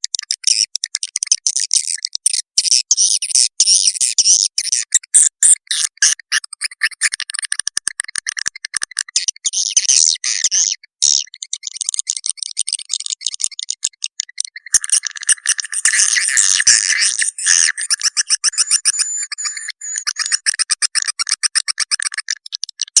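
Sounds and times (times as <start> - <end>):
swiftlet chirps and clicking trills: 14.6 - 20.5.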